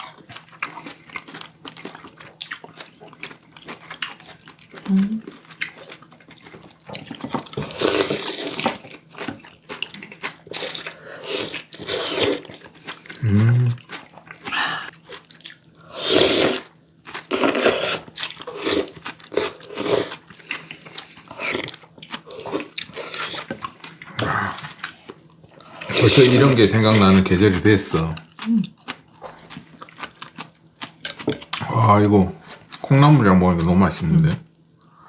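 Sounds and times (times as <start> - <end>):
chewing and crunching food: 0.0 - 35.0
person humming: 4.9 - 5.3, 13.2 - 13.8.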